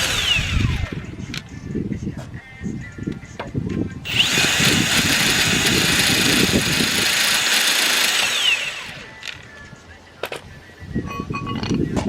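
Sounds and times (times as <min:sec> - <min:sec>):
power tool motor spinning: 0:00.0 - 0:01.0, 0:04.1 - 0:09.4.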